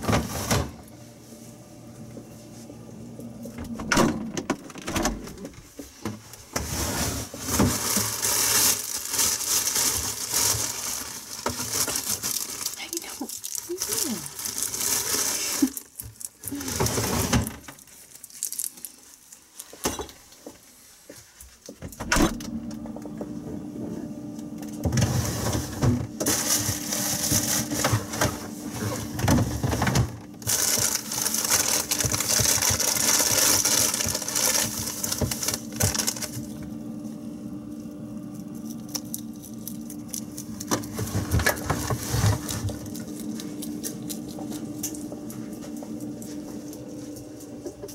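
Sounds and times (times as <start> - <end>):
rabbit chewing vegetables: 38.2 - 47.9.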